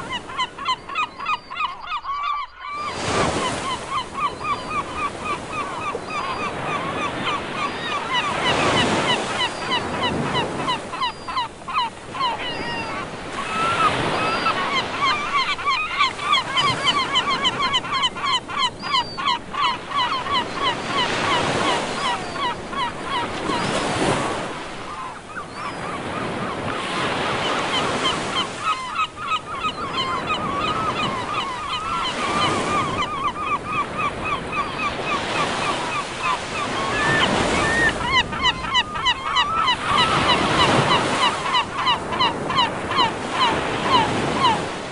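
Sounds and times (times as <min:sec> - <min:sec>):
seagulls calling: 0:00.0 - 0:44.9.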